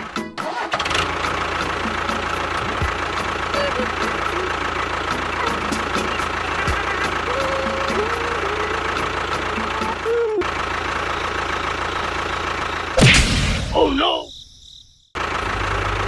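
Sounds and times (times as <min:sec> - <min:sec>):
small motor whining: 0:02.6 - 0:12.9
sudden loud burst: 0:13.0 - 0:14.3.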